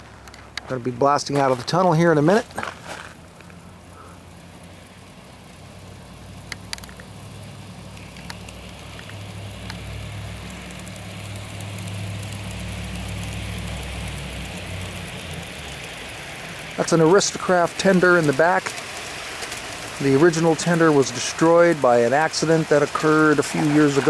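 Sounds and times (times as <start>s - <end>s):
model train motor humming: 0.0s - 24.0s
wheels running on rails: 0.0s - 24.0s
light clicks: 6.4s - 7.2s, 7.9s - 16.0s.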